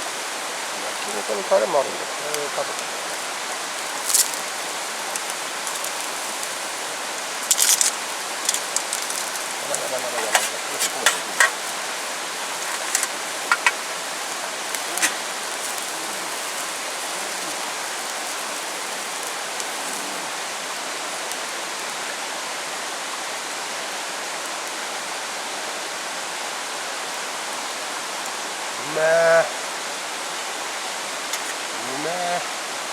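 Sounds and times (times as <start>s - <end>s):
rushing water: 0.0s - 32.9s
sharp ticks: 12.6s - 13.8s.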